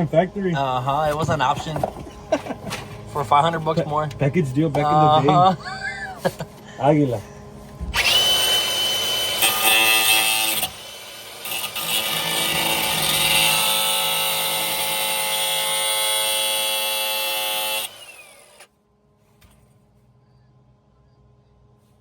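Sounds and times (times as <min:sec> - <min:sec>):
angle grinder whining: 0:07.9 - 0:18.7.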